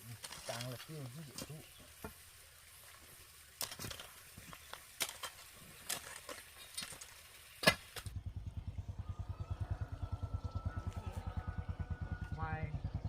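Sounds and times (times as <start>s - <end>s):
small motorbike engine running: 8.0s - 13.0s.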